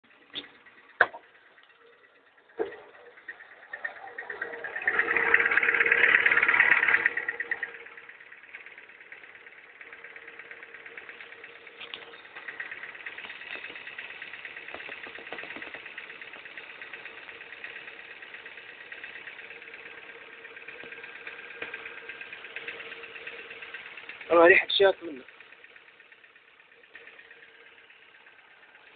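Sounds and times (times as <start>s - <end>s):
car engine idling: 0.0s - 28.9s
constant whine: 0.0s - 28.9s
fast ticking: 0.0s - 28.9s.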